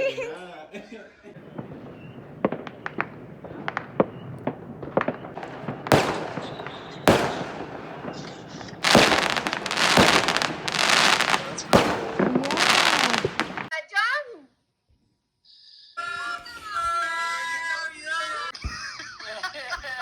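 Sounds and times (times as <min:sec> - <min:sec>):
firecrackers crackling: 0:01.4 - 0:13.7
fireworks cracking: 0:01.4 - 0:13.7
loud fireworks bangs: 0:01.4 - 0:13.7.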